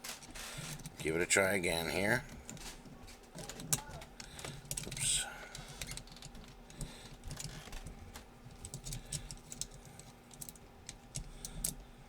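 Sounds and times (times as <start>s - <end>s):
small steel parts clicking: 2.5s - 11.8s.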